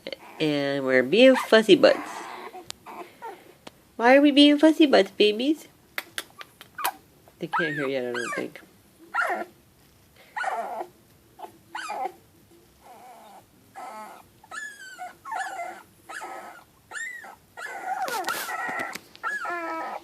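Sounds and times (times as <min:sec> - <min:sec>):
puppies whimpering and squealing: 0:00.1 - 0:03.5, 0:06.8 - 0:09.5, 0:10.3 - 0:12.2, 0:12.8 - 0:20.0.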